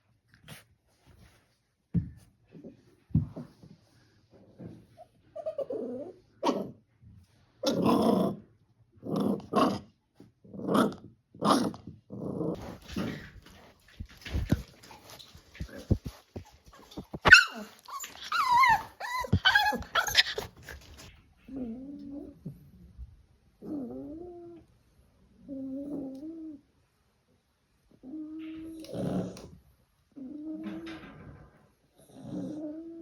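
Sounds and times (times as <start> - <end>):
puppies play-growling: 12.1 - 22.7
puppies whining and squealing: 16.9 - 21.7.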